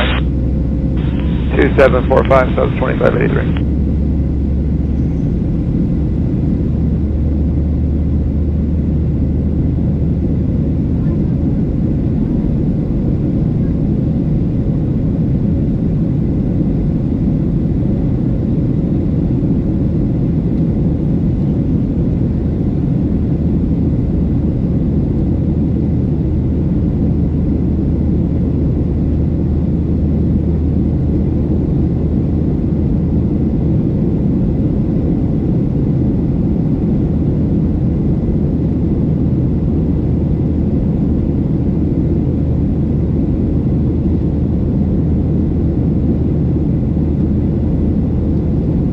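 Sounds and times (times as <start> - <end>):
airplane cabin engine drone: 0.0 - 48.9.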